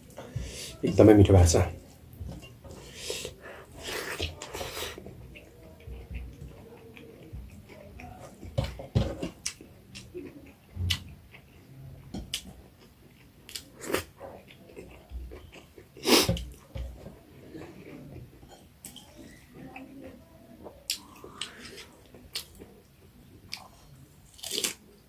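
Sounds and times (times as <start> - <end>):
chewing with mouth clicks: 9.2 - 16.6, 20.6 - 24.8.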